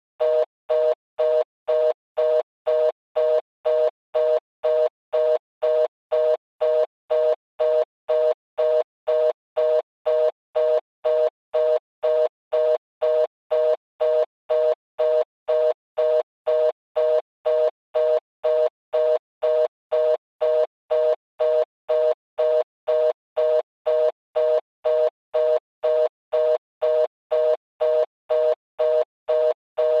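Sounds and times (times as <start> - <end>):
telephone fast busy signal: 0.2 - 30.0.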